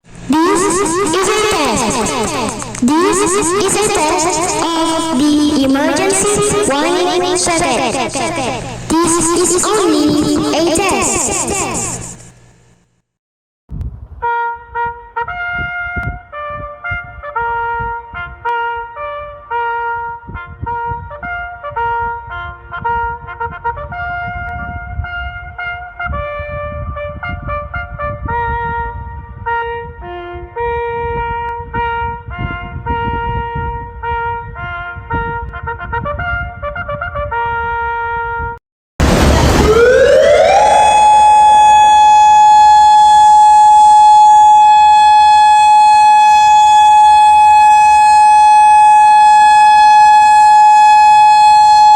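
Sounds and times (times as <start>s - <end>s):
siren loudspeaker playing trumpet-like tune: 0.2s - 10.5s, 14.3s - 38.4s, 39.0s - 51.9s
siren playing bugle tune: 0.3s - 8.2s, 39.0s - 51.9s
low rumble: 39.0s - 43.4s.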